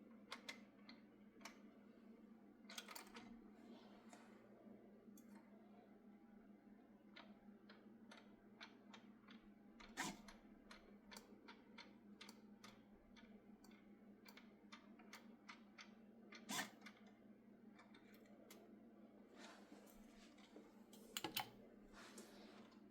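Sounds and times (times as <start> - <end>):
low steady hum: 0.1 - 16.4
small irregular clicks: 0.2 - 1.7, 2.7 - 3.4, 7.1 - 18.7.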